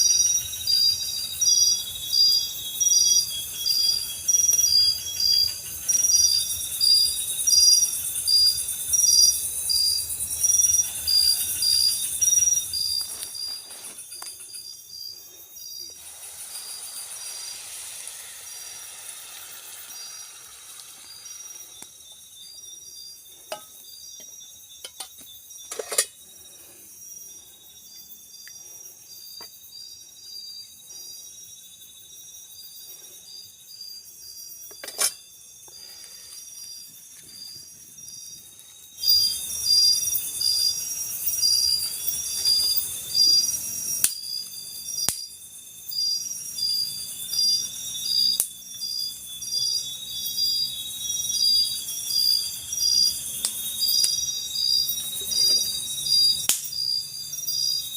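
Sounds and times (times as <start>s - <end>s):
insects chirping: 0.0s - 57.9s.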